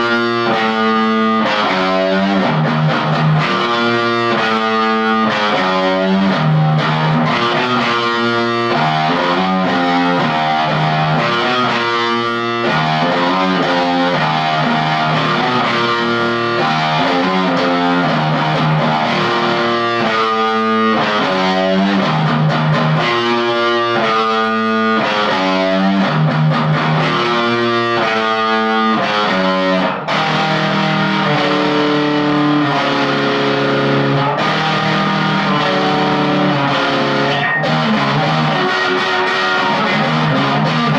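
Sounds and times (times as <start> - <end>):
distorted electric guitar riffs: 0.0 - 40.9.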